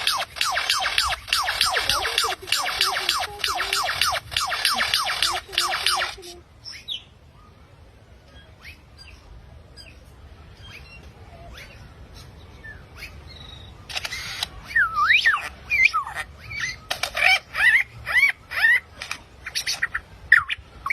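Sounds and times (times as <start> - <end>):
bird squawking: 0.0 - 7.0
bird chirping and whistling: 0.0 - 7.1, 12.5 - 16.9.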